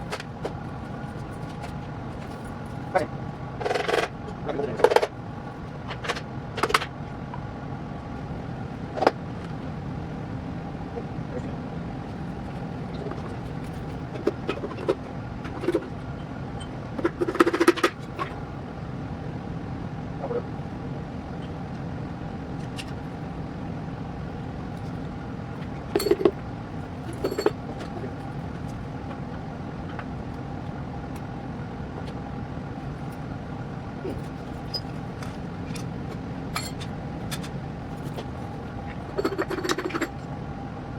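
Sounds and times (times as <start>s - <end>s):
steady mechanical hum: 0.0s - 40.9s
metal tools clanking: 25.9s - 26.4s, 27.0s - 28.1s, 34.1s - 38.3s, 39.0s - 40.2s.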